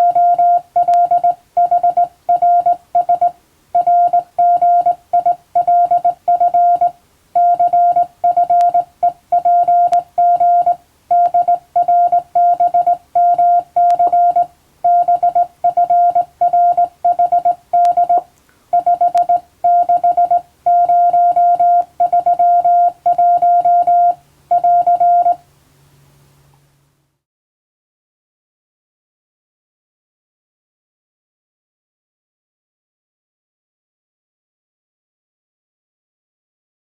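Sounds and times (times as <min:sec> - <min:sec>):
morse code tone: 0:00.0 - 0:25.4
faint low hum: 0:00.0 - 0:27.2.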